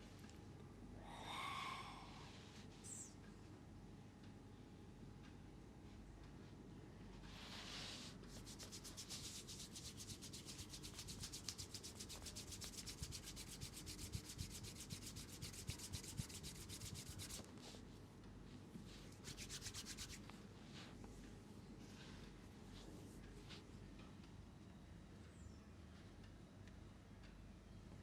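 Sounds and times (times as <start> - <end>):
hands rubbing in massage: 7.3 - 17.8, 18.9 - 21.0.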